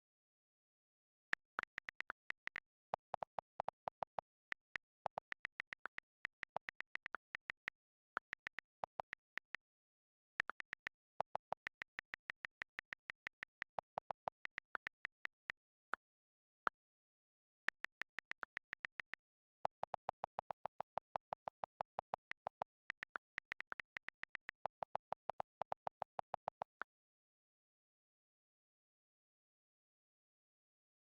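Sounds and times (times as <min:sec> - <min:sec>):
rapid sharp clicks: 0:01.3 - 0:09.8, 0:10.4 - 0:15.6, 0:17.7 - 0:26.8.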